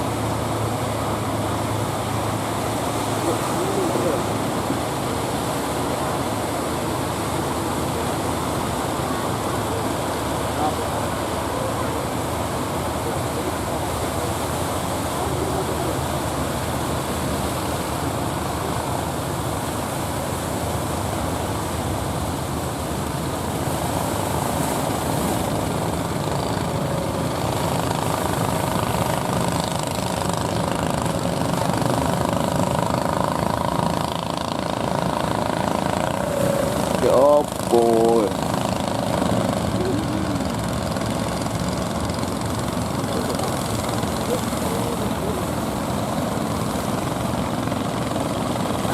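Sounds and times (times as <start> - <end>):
engine drone: 0.0 - 48.9
heavy surf breaking: 12.1 - 48.9.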